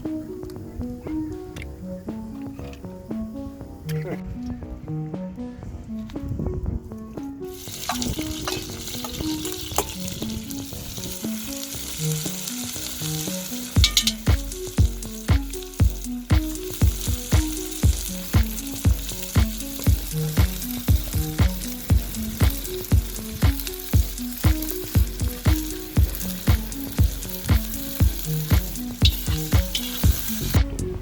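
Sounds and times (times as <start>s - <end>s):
background music: 0.0s - 31.0s
steady beat: 0.0s - 31.0s
mussels sizzling in a pan: 7.5s - 30.7s.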